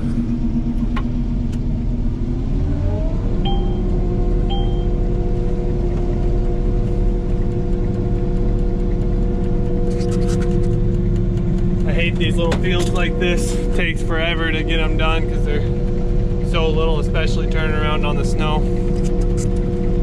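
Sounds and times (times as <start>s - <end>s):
combine harvester engine: 0.0s - 20.0s
short electronic beeps: 3.5s - 3.9s, 4.5s - 5.0s.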